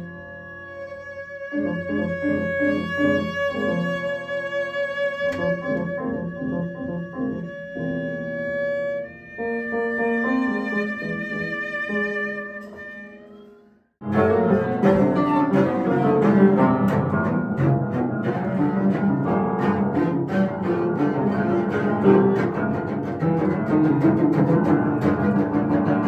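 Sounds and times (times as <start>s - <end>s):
bowed cello: 0.0s - 26.0s
rapid piano notes: 14.0s - 26.0s.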